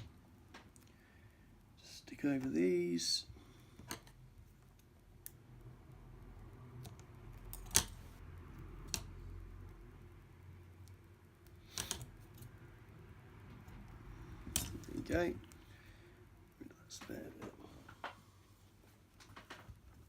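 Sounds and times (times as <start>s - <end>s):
faint low hum: 0.0s - 20.0s
small clicks of handling parts: 3.6s - 5.4s, 8.8s - 9.2s, 10.8s - 12.6s, 14.4s - 15.6s.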